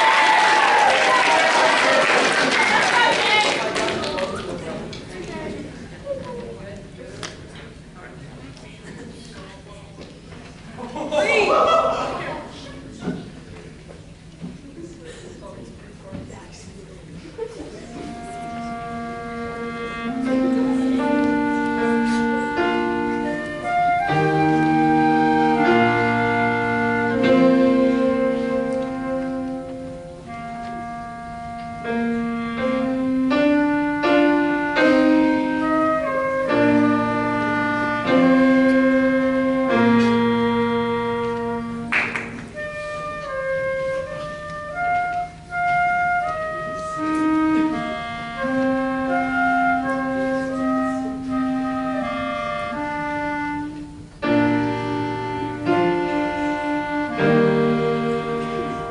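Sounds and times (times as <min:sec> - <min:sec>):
wind ensemble playing: 0:17.7 - 0:58.9
piano accompaniment: 0:17.8 - 0:58.9.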